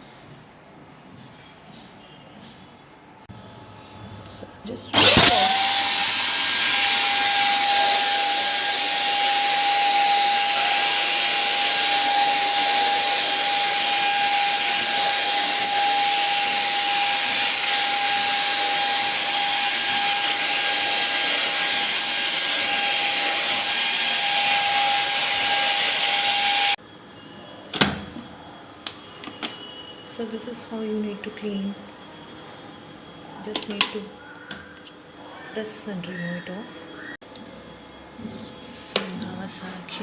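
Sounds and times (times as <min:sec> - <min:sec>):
vacuum cleaner whining: 0:04.9 - 0:26.8.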